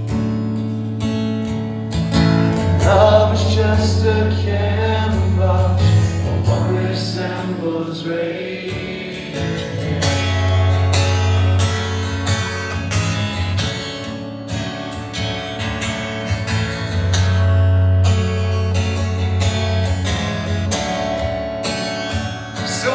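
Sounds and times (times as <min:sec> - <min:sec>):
strummed acoustic guitar: 0:00.0 - 0:22.9
bass line: 0:01.9 - 0:07.6, 0:09.3 - 0:13.7, 0:16.6 - 0:21.2.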